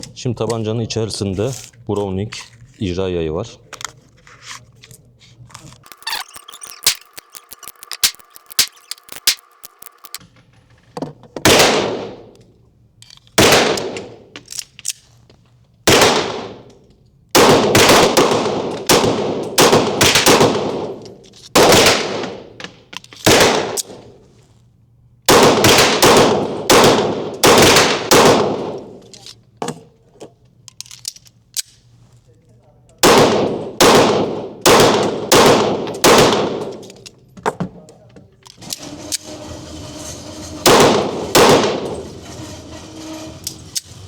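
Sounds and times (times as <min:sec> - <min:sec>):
pistol shots with long echo: 0:11.5 - 0:12.2, 0:13.4 - 0:14.2, 0:15.9 - 0:16.6, 0:17.4 - 0:21.0, 0:21.6 - 0:22.4, 0:23.3 - 0:24.0, 0:25.3 - 0:29.0, 0:33.0 - 0:36.8.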